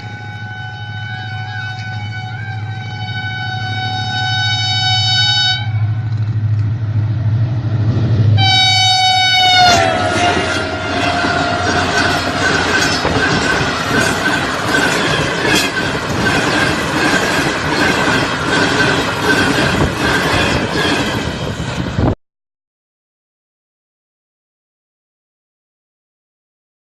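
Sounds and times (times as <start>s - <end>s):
locomotive air horn: 0.0s - 6.1s, 8.4s - 13.1s
train wheels clacking over rail joints: 9.7s - 22.0s.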